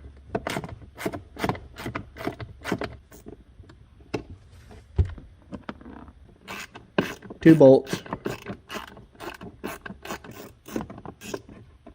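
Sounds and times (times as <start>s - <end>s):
ratchet clicking: 6.5s - 11.4s.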